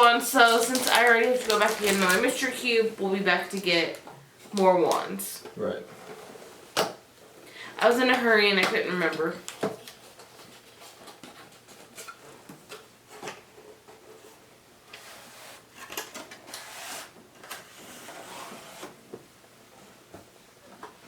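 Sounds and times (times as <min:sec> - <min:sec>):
packaging rustling and scraping: 0:00.0 - 0:02.9, 0:09.1 - 0:19.0.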